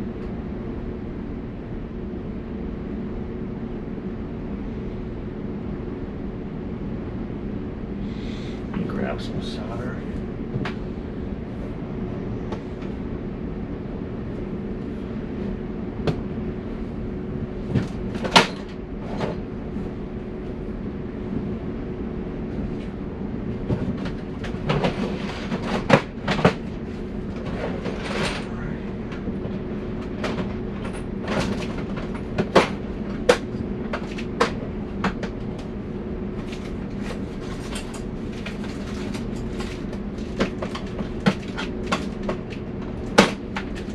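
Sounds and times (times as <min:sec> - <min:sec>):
steady mechanical hum: 0:00.0 - 0:43.9.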